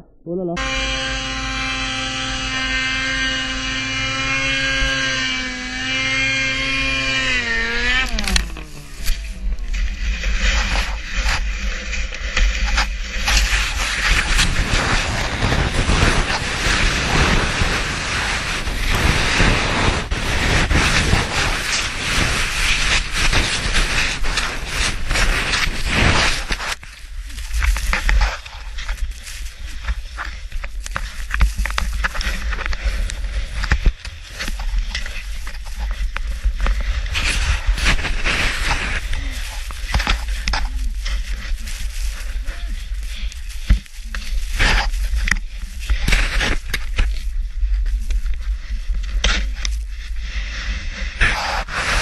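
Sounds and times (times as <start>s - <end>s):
mechanical drone: 0.0s - 26.6s
snow rushing and scraping: 5.9s - 52.0s
wind buffeting microphone: 14.0s - 26.5s.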